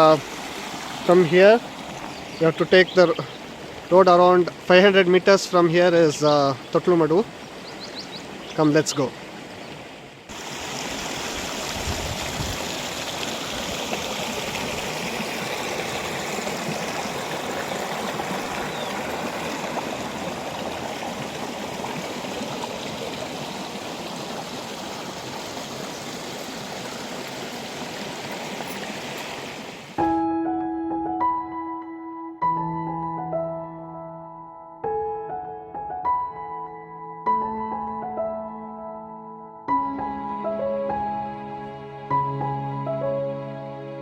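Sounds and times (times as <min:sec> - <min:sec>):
stream rushing over rocks: 0:00.0 - 0:30.1.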